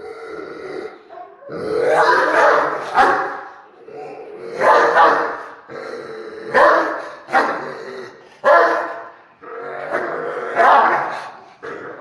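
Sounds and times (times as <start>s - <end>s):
dog growling low: 0.0s - 2.2s, 5.5s - 6.6s, 9.4s - 12.0s
dog barking angrily: 1.8s - 3.6s, 4.6s - 5.7s, 6.5s - 7.8s, 8.4s - 9.2s, 9.9s - 11.4s.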